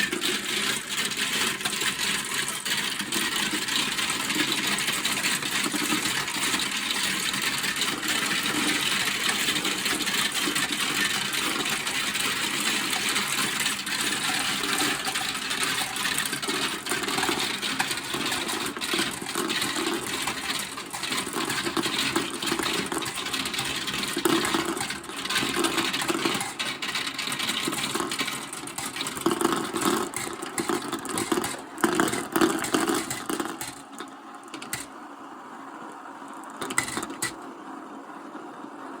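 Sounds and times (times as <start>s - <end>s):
marbles rolling on plastic track: 0.0s - 34.9s, 35.8s - 37.4s
marbles clacking: 8.2s - 34.9s, 36.4s - 37.4s.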